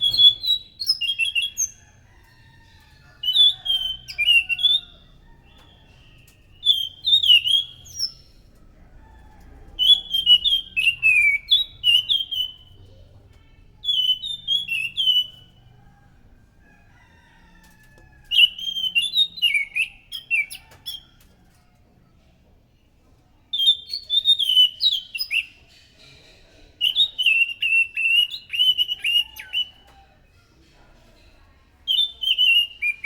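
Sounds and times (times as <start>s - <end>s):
thrush singing whistled notes: 0.0s - 1.8s, 3.2s - 6.0s, 6.6s - 8.3s, 9.8s - 12.6s, 13.8s - 15.5s, 18.3s - 20.6s, 23.6s - 25.6s, 26.8s - 29.8s.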